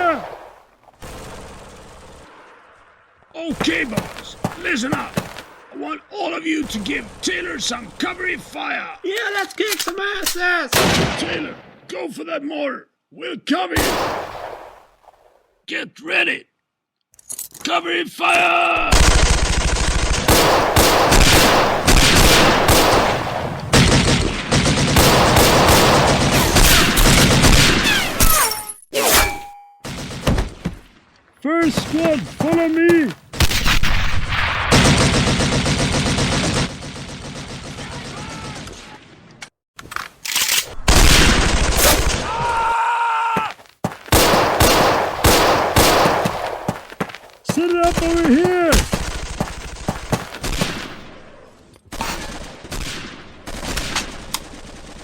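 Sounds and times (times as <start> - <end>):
rapid machine gun fire: 1.0 - 2.3, 18.9 - 27.8, 34.6 - 38.1, 40.9 - 42.2, 48.8 - 50.9
separate gunshots: 6.5 - 8.4, 10.7 - 11.8, 13.8 - 14.9, 18.8 - 28.3, 29.8 - 31.0, 31.7 - 39.3, 40.7 - 42.4, 44.1 - 47.0, 47.6 - 55.0.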